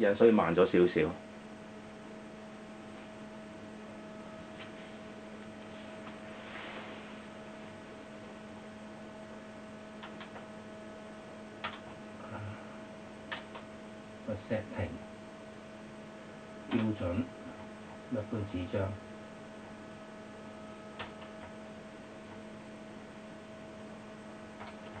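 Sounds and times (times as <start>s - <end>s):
electrical hum: 0.0s - 25.0s.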